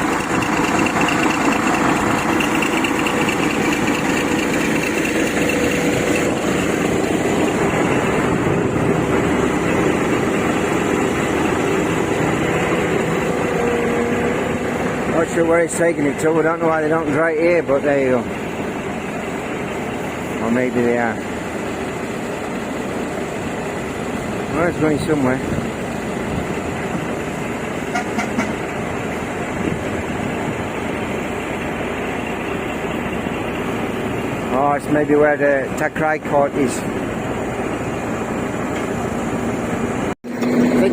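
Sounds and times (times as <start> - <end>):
heavy machinery engine humming: 0.0 - 40.9.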